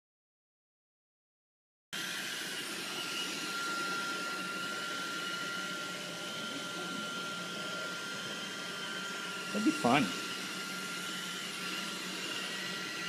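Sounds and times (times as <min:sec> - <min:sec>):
appliance motor whining: 0:02.0 - 0:13.0.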